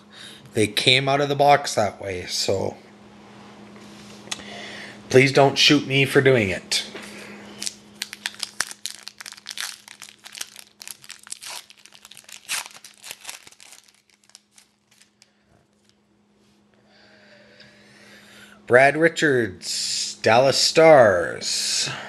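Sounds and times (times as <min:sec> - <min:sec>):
wrapper tearing and crinkling: 0:07.6 - 0:16.0.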